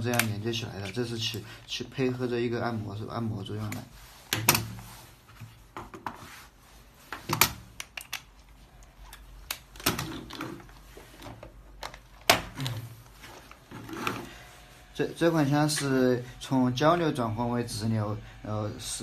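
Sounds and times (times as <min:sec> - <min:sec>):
attachment heads clicking and knocking: 0:00.0 - 0:01.4.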